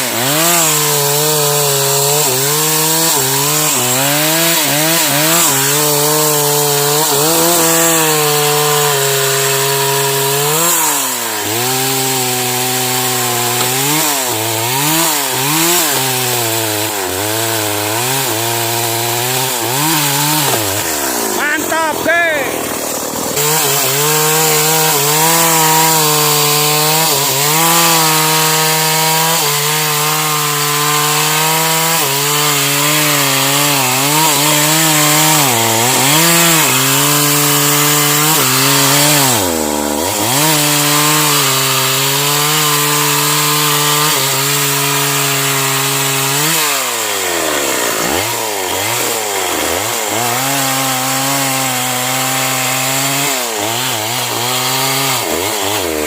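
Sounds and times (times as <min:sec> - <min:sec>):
chainsaw cutting wood: 0:00.0 - 0:56.0.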